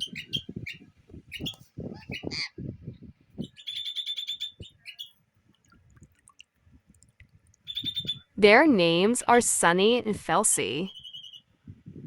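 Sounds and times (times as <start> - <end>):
parrots chirping: 0.0 - 2.5, 3.4 - 5.1, 7.7 - 8.3, 10.8 - 11.4.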